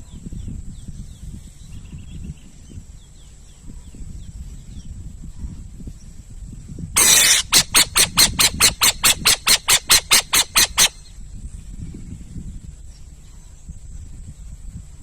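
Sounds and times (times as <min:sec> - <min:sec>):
owl screeching: 0:07.0 - 0:11.0
owl hissing calls: 0:07.0 - 0:11.1.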